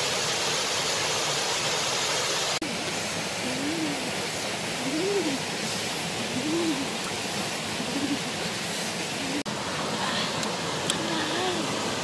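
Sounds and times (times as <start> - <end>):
rushing water: 0.0 - 12.0
soft low hoot-like call: 3.4 - 4.1, 4.8 - 5.4, 6.3 - 7.0, 7.8 - 8.3.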